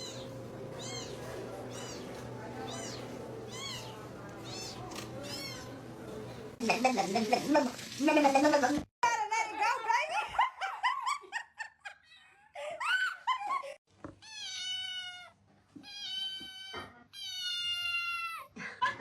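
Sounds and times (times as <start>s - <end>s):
cat meowing: 0.0s - 5.8s, 14.2s - 18.5s.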